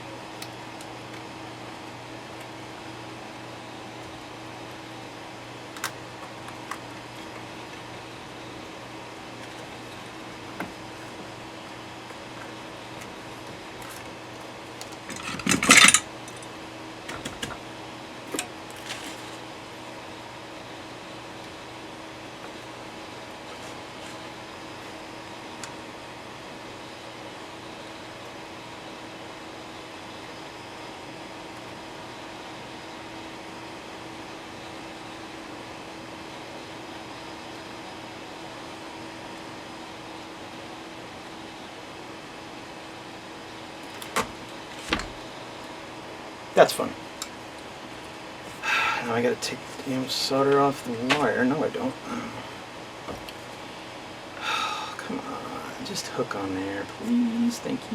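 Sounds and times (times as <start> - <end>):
fan hum and hiss: 0.0 - 57.9
small metal objects clattering: 15.0 - 16.5, 18.4 - 19.5.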